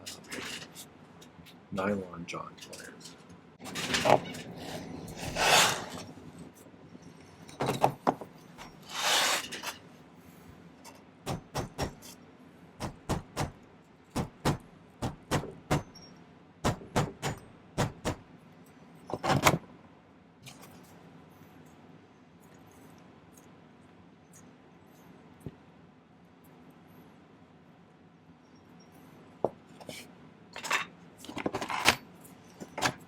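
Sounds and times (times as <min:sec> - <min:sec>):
hand tools scraping: 0:03.6 - 0:06.1, 0:08.6 - 0:09.8.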